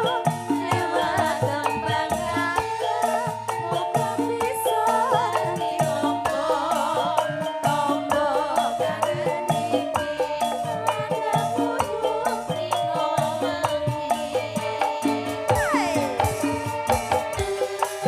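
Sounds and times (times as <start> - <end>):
rattling shaker percussion: 0.0 - 18.0
live band music: 15.0 - 18.0.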